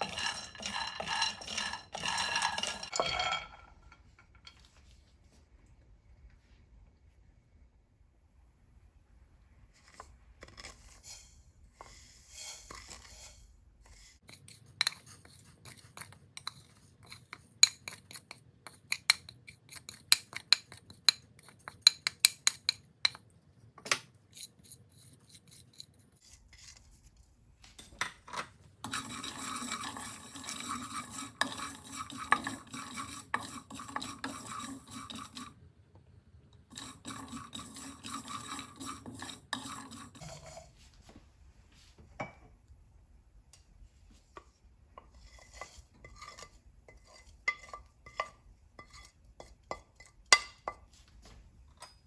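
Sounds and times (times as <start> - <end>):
stirring scrape in a pan: 0.0 - 3.6, 9.8 - 22.8, 24.3 - 27.2, 28.8 - 35.6, 36.7 - 41.0, 44.1 - 51.1
utensils clinking and tapping: 0.0 - 4.7, 27.8 - 35.5.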